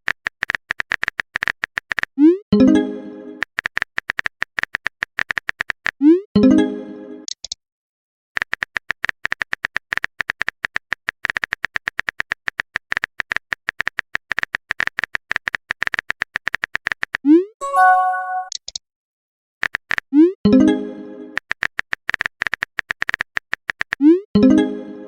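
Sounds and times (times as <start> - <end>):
phone keyboard clicks: 0.1 - 2.1, 3.4 - 6.0, 21.4 - 24.0
message chime: 17.6 - 18.5.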